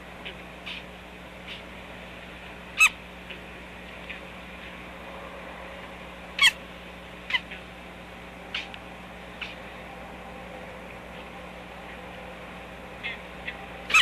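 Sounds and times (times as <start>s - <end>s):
chicks calling: 2.8s - 3.0s, 6.4s - 6.6s, 8.5s - 8.8s, 9.4s - 9.7s, 13.0s - 14.0s.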